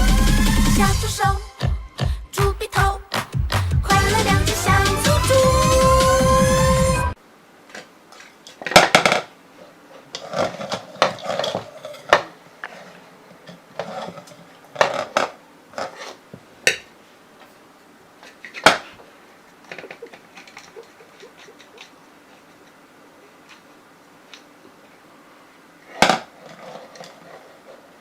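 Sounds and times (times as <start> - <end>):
background music: 0.0 - 7.2.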